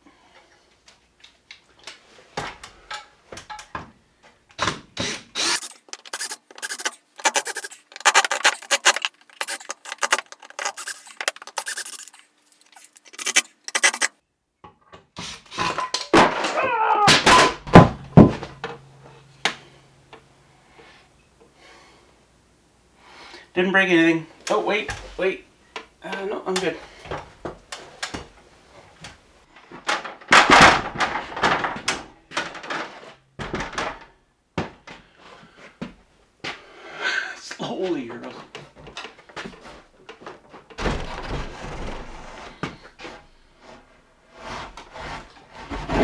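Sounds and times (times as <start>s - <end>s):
knocks clicks and scrapes: 5.4s - 14.1s
scraping clatter: 5.4s - 14.1s.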